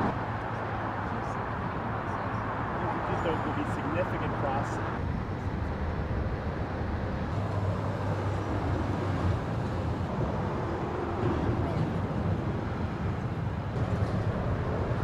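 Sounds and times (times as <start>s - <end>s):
traffic rumble: 0.0s - 15.0s.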